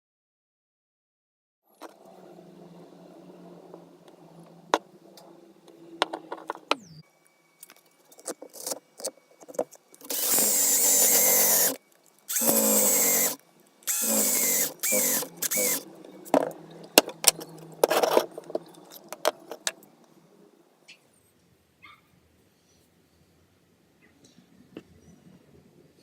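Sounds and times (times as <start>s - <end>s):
handheld power tool running: 10.0s - 15.9s.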